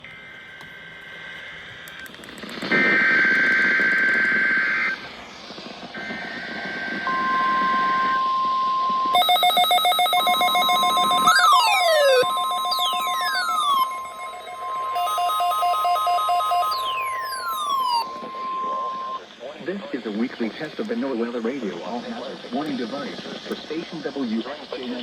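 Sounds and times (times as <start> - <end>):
steady warning alarm tone: 6.0 - 19.3
rapid electronic alarm beeps: 6.0 - 19.4
digital data header bursts: 9.2 - 19.2
falling chirps: 9.2 - 19.2
harsh buzzing data screech: 9.2 - 19.2.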